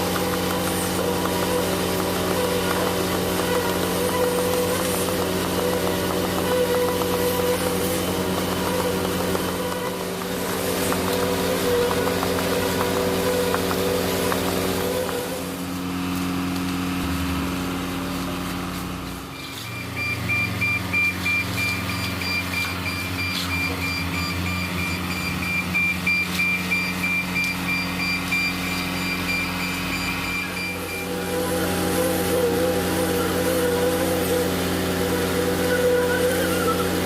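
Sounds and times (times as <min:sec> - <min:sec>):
heavy vehicle engine running: 0:00.0 - 0:37.0
electronic warning beeper: 0:19.4 - 0:31.2.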